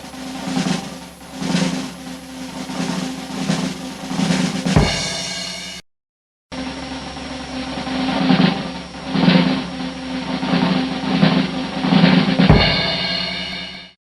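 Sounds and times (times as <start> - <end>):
rolling drum-kit pattern: 0.0 - 5.8, 6.9 - 14.0
deep bass drum hit ringing: 4.8 - 5.5, 12.5 - 13.5.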